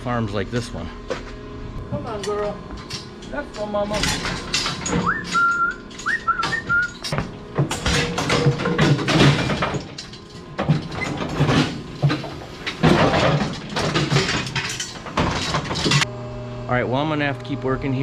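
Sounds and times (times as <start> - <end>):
metal chute clattering: 2.0 - 16.0.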